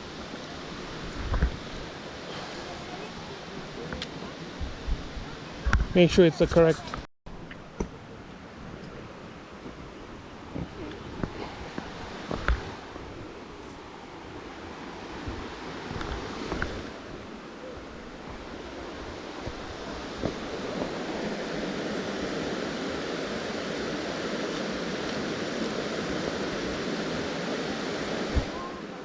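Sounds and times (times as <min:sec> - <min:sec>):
waterfall rushing: 0:10.2 - 0:29.0.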